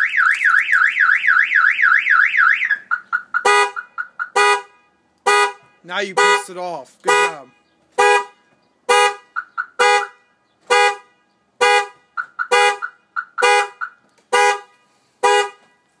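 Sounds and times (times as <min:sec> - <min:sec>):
car alarm horn honking: 0:00.0 - 0:15.9.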